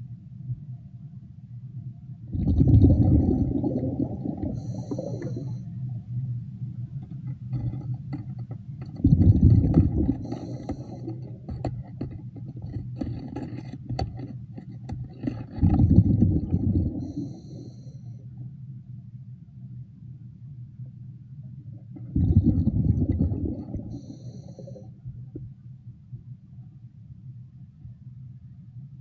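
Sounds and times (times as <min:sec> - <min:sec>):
steady low hum: 0:00.0 - 0:29.0
exhaled bubbles gurgling underwater: 0:02.3 - 0:05.8, 0:06.9 - 0:14.3, 0:15.0 - 0:17.9, 0:21.8 - 0:25.6.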